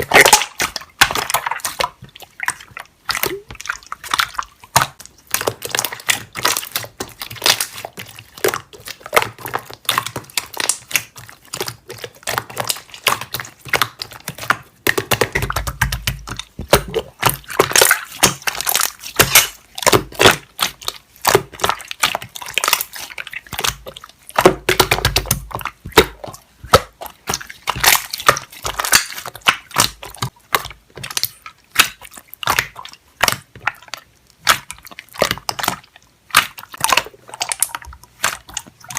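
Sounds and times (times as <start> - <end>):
slime squelching: 0.0 - 38.9
air bubble pops: 14.9 - 20.4.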